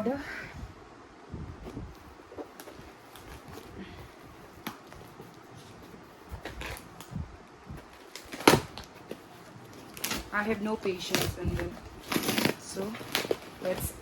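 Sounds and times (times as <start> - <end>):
plastic packaging crinkling: 2.3 - 3.8, 4.4 - 7.2, 7.8 - 14.0.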